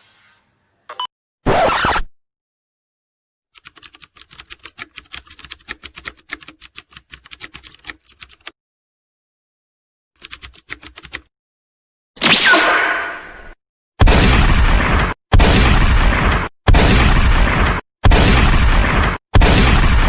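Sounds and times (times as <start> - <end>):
rapid typing clicks: 3.6 - 8.5, 10.2 - 11.3.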